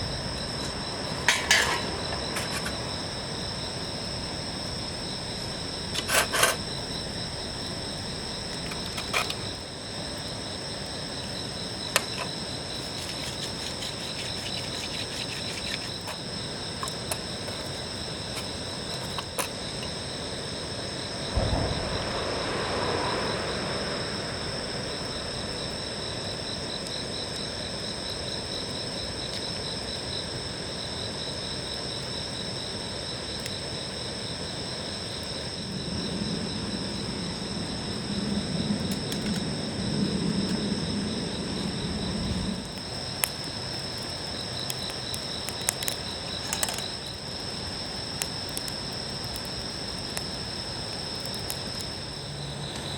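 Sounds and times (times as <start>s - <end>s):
crickets chirring: 0.0s - 52.9s
swell of noise: 21.2s - 26.4s.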